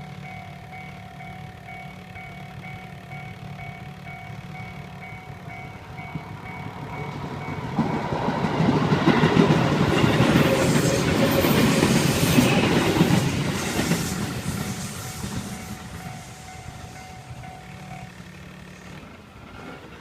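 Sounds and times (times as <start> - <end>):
level crossing warning bell: 0.0 - 9.0, 15.0 - 18.9
train wheels rumbling on rails: 0.0 - 20.0.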